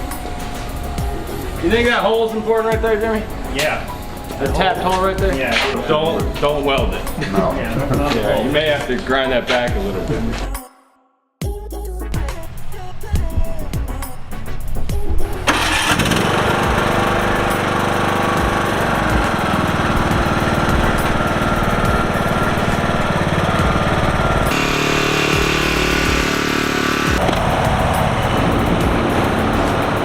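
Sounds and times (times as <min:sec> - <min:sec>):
lawnmower engine starting and running: 0:00.0 - 0:08.8, 0:15.4 - 0:30.0.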